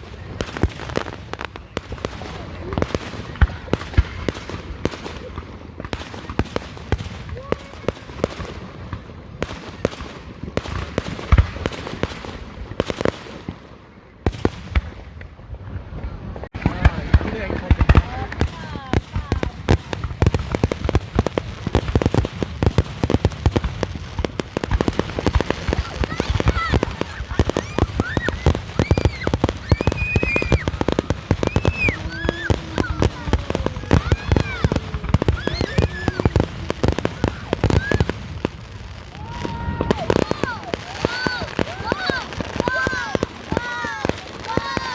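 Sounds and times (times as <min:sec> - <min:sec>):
fireworks bangs and crackling: 0:00.0 - 0:44.9.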